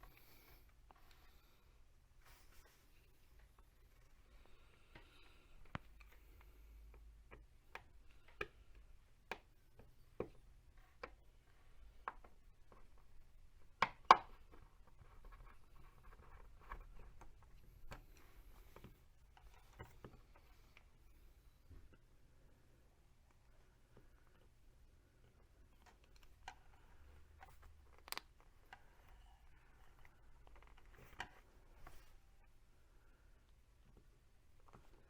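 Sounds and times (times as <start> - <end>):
small parts clicking and tapping: 25.2 - 32.1.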